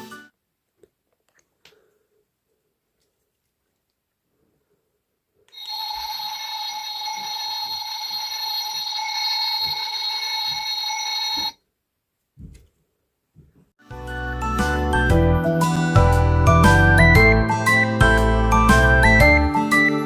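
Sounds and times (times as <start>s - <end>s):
electronic bell ringing: 5.5s - 11.6s.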